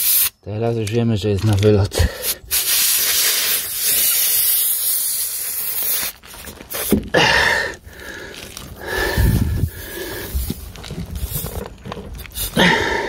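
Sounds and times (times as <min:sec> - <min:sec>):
air hissing from tyre: 0:00.0 - 0:00.3, 0:02.2 - 0:07.0, 0:08.8 - 0:13.0
handling noises: 0:05.6 - 0:12.6.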